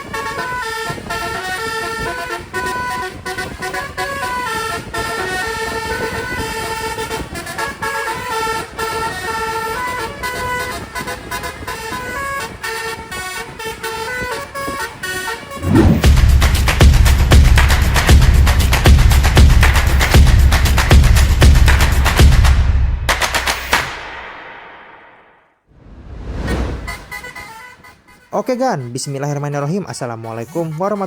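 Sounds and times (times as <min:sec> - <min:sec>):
multi-trumpet air horns playing tunes: 0:00.0 - 0:15.6.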